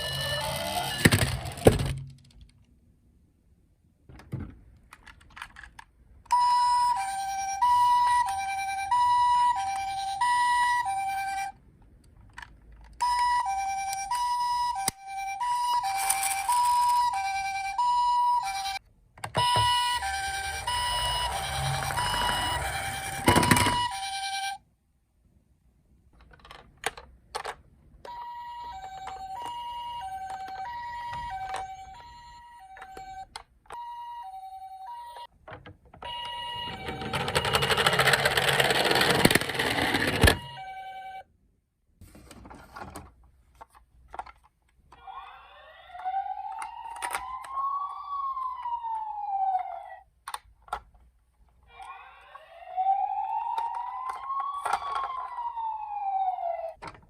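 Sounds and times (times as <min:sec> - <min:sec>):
toy two-tone siren: 0:00.0 - 0:01.7, 0:06.3 - 0:11.6, 0:13.0 - 0:18.8, 0:19.4 - 0:24.6, 0:28.0 - 0:35.3, 0:36.0 - 0:41.3, 0:44.9 - 0:50.1, 0:51.6 - 0:56.8
toy police siren wailing: 0:00.0 - 0:01.8, 0:06.3 - 0:11.6, 0:13.0 - 0:18.8, 0:19.4 - 0:24.6, 0:28.0 - 0:35.3, 0:36.0 - 0:41.3, 0:44.9 - 0:50.1, 0:51.6 - 0:56.8.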